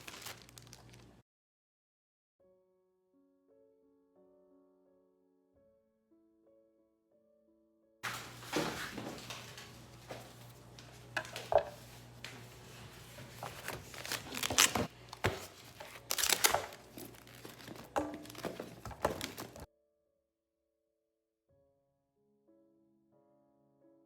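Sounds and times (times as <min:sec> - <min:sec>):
plastic packaging crinkling: 0:00.0 - 0:01.2, 0:09.1 - 0:19.7.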